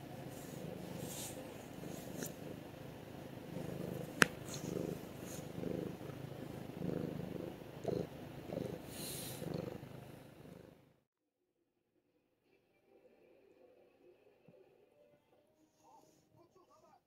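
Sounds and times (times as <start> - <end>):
cat snoring: 0.0 - 11.0.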